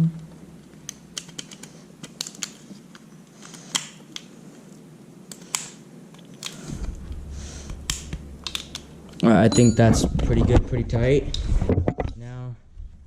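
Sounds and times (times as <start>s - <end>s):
sharp clicks: 6.4s - 9.2s.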